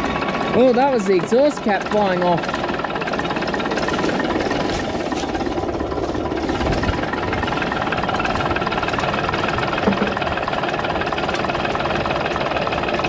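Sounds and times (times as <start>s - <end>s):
diesel engine starting: 0.0s - 13.0s
sharp engine knock: 9.8s - 10.4s.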